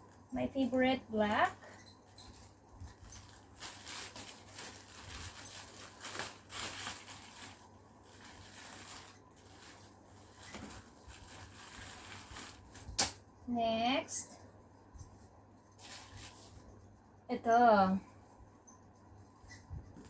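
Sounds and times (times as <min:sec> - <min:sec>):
bag rustling and scraping: 0:01.7 - 0:13.0, 0:15.8 - 0:16.7.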